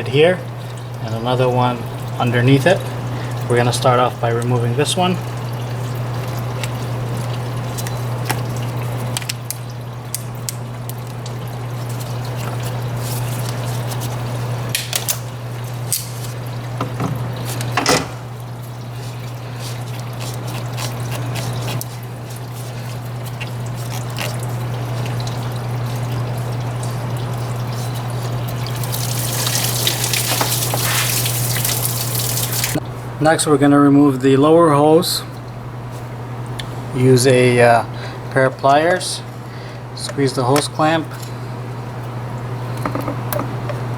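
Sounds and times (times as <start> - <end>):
coolant trickling out: 0.0 - 33.0.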